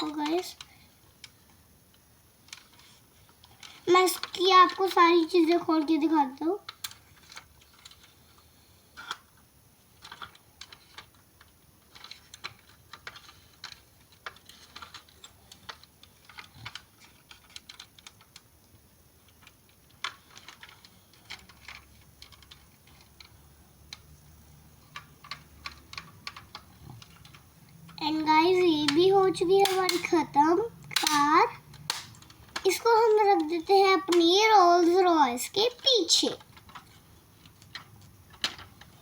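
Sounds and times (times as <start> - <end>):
toy car doors clicking shut: 30.9 - 32.8.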